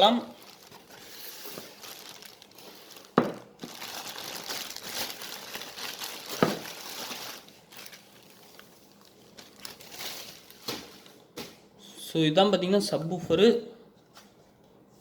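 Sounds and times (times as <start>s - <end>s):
plastic cover crinkling and rustling: 0.0s - 11.8s.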